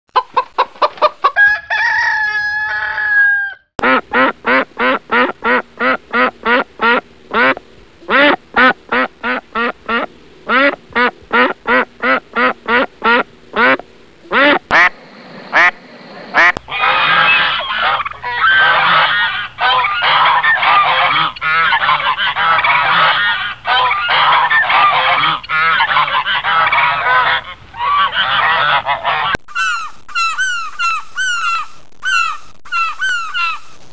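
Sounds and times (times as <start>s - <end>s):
hen clucking: 0.2s - 2.4s, 3.8s - 33.8s
rooster crowing: 1.3s - 3.7s, 16.4s - 29.2s
geese honking: 3.8s - 33.7s
ducks quacking: 3.8s - 33.8s.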